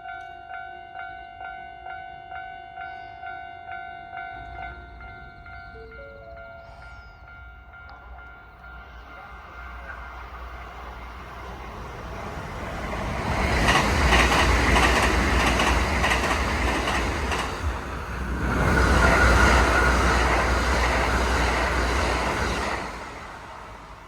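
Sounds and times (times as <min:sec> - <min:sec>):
train wheels clattering over rail joints: 0:12.2 - 0:23.0.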